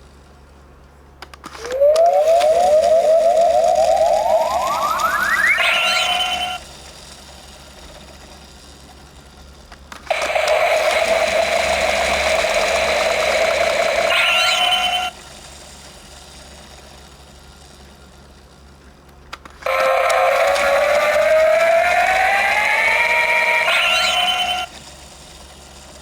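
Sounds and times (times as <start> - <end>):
steady whirring hum: 0.0 - 26.0
toy click: 1.2 - 6.7, 9.7 - 15.2, 19.2 - 24.9
rising whirring electronic chirp: 1.5 - 6.6, 10.1 - 15.2, 19.6 - 24.7.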